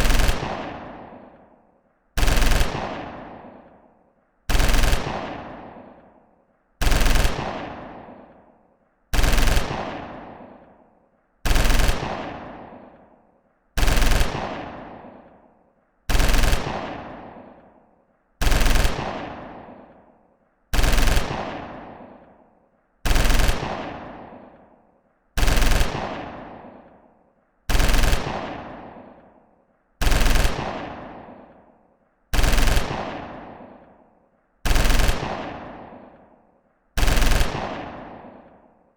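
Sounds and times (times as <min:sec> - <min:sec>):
machine gun bursts with echo: 0:00.0 - 0:01.5, 0:02.2 - 0:03.8, 0:04.5 - 0:06.1, 0:06.8 - 0:08.4, 0:09.1 - 0:10.8, 0:11.4 - 0:13.1, 0:13.8 - 0:15.4, 0:16.1 - 0:17.7, 0:18.4 - 0:20.0, 0:20.7 - 0:22.4, 0:23.0 - 0:24.7, 0:25.4 - 0:27.0, 0:27.7 - 0:29.4, 0:30.0 - 0:31.7, 0:32.3 - 0:34.0, 0:34.6 - 0:36.4, 0:37.0 - 0:38.8.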